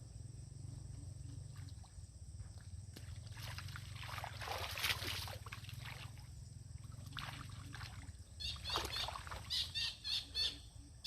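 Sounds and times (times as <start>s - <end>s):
low hum: 0.0s - 4.1s
water splashing and trickling: 1.3s - 9.8s.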